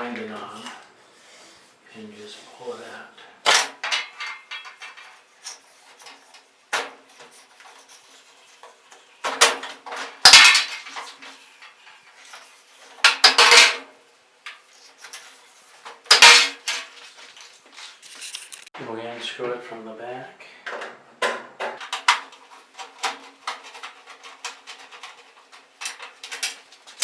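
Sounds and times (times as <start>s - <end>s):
plastic and metal parts clattering: 3.5s - 13.9s, 14.5s - 18.7s, 21.8s - 27.0s.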